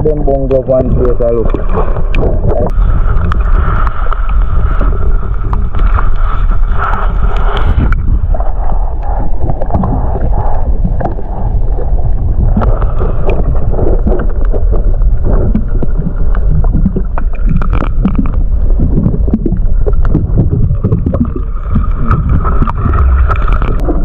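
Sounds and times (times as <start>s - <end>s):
wind buffeting microphone: 0.0s - 24.0s
steady higher hum: 20.3s - 24.0s.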